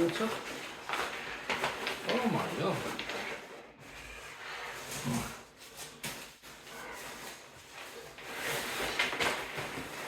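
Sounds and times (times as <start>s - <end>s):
rustling of camping gear: 0.0s - 10.0s.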